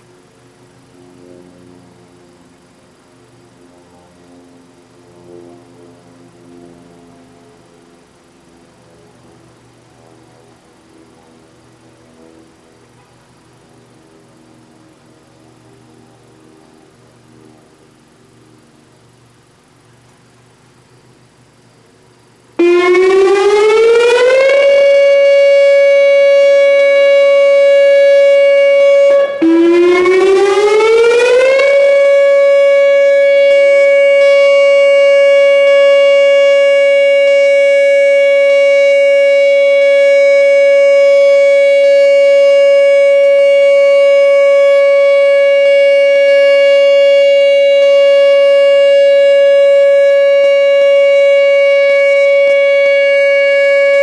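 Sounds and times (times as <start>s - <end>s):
electronic warning siren: 22.6s - 54.0s.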